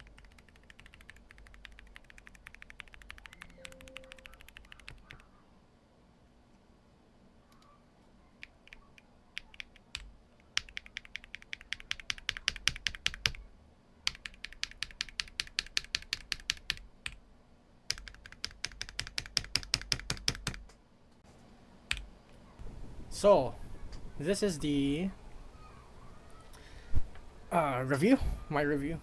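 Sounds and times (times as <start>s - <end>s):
typing on mechanical keyboard: 0.0s - 5.3s, 8.4s - 13.4s, 14.1s - 17.2s, 17.9s - 20.6s.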